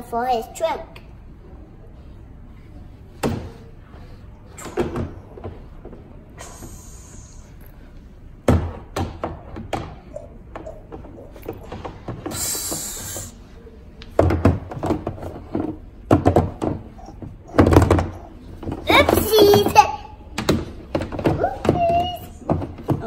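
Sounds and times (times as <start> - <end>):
plastic toys knocking and clattering: 8.4 - 12.8, 14.1 - 23.0.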